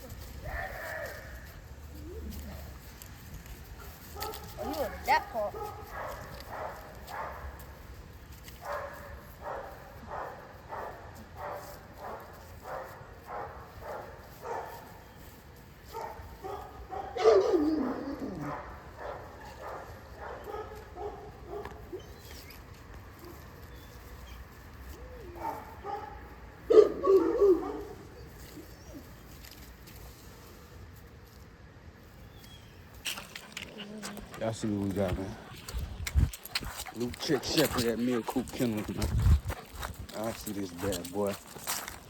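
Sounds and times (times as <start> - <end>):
puppy barking in high yaps: 16.0 - 22.1, 25.2 - 28.0.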